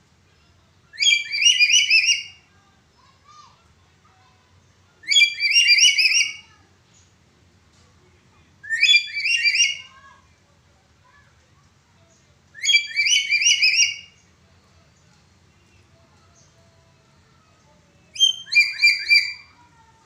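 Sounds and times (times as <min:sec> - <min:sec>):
parrot whistled calls: 0:01.0 - 0:02.4, 0:05.1 - 0:06.4, 0:08.6 - 0:09.9, 0:12.6 - 0:14.2, 0:18.1 - 0:19.6.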